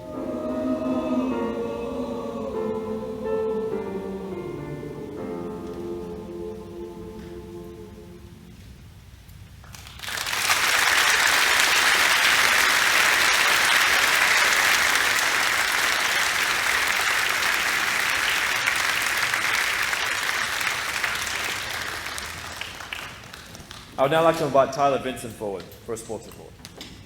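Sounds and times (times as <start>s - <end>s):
audience applauding: 9.7s - 24.5s.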